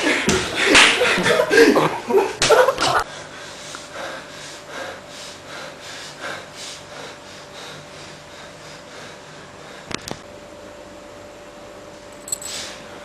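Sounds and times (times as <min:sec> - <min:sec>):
faint steady hum: 0:00.0 - 0:13.0
heavy rapid breathing: 0:03.1 - 0:10.0.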